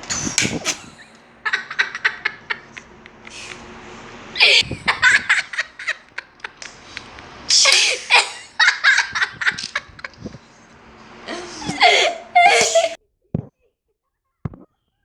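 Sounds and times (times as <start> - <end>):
children laughing: 0.6 - 13.0.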